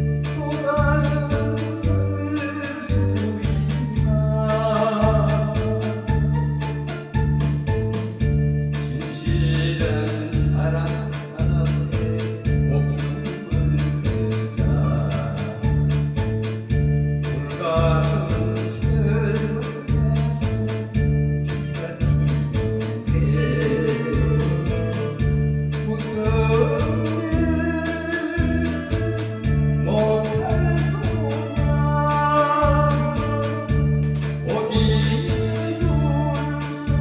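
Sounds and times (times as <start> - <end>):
instrumental accompaniment with bass beat: 0.0 - 37.0
group of singers: 23.0 - 25.3.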